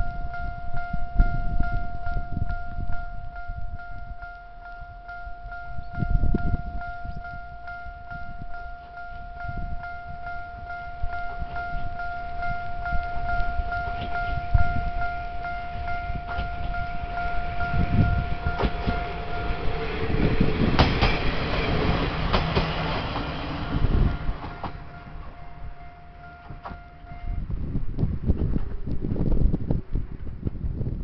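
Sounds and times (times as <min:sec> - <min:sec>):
level crossing warning bell clanging: 0:00.0 - 0:27.5
train wheels thumping over rail joints: 0:13.1 - 0:14.8, 0:15.8 - 0:27.2.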